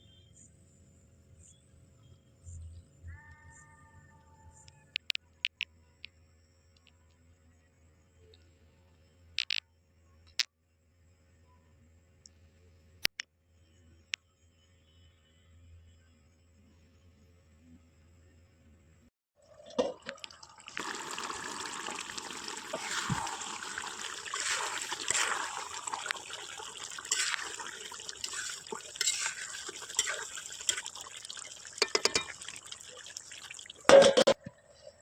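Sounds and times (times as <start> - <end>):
water trickling: 19.4 - 34.3.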